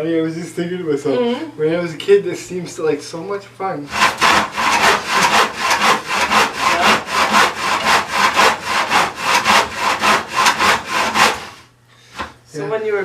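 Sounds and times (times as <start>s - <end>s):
hand saw cutting wood: 3.9s - 12.3s.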